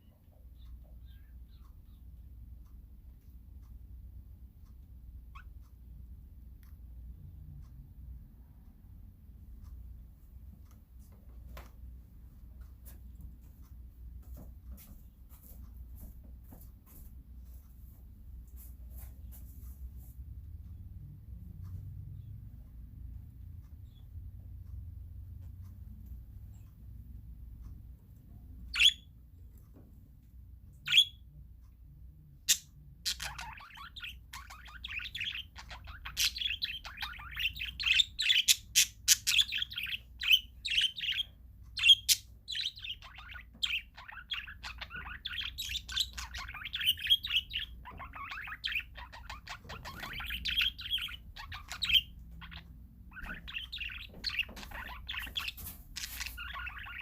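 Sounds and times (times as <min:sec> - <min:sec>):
parakeets calling and chattering: 0:04.6 - 0:08.0, 0:28.1 - 0:29.2, 0:30.7 - 0:31.4, 0:32.3 - 0:57.0.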